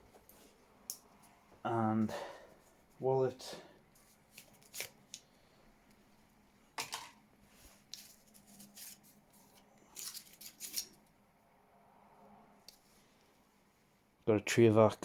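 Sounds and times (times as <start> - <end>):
wallet handling scrapes and clicks: 7.6 - 11.0.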